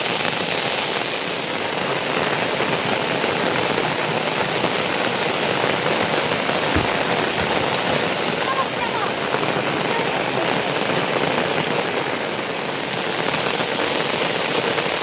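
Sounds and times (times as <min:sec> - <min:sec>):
heavy rain falling: 0:00.0 - 0:15.0
dull low thump: 0:06.5 - 0:08.4.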